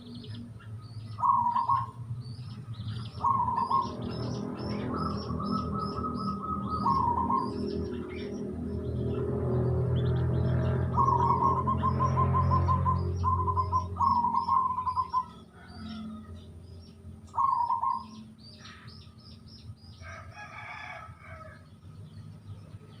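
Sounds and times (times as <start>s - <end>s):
bird long call: 0.0s - 16.5s, 17.3s - 19.3s
small birds chirping: 0.0s - 23.0s
dove cooing: 1.2s - 2.1s, 2.9s - 16.4s, 17.3s - 18.8s.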